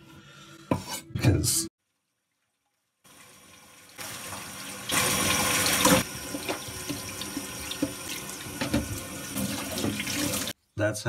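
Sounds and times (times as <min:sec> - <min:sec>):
tap water running into sink: 0:03.1 - 0:10.6.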